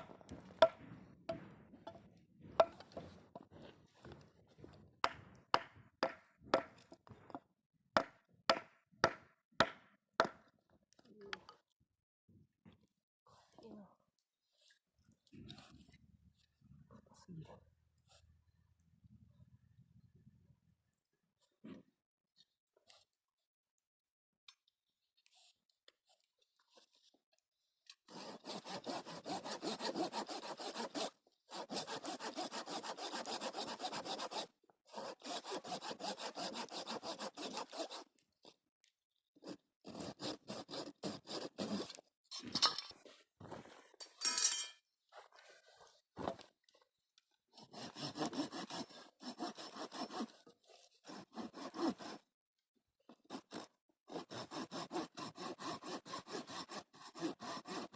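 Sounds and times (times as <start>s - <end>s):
scraping and knocking: 0.0s - 5.8s
hand saw cutting wood: 0.0s - 7.4s, 8.0s - 10.4s, 28.0s - 38.6s, 39.4s - 44.2s, 45.1s - 46.6s, 47.5s - 52.3s, 53.1s - 57.9s.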